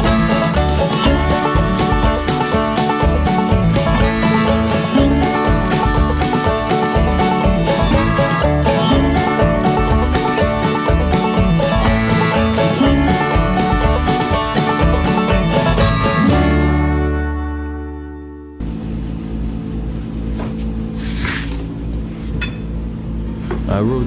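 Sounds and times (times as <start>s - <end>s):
plucked strings country music: 0.0s - 18.6s.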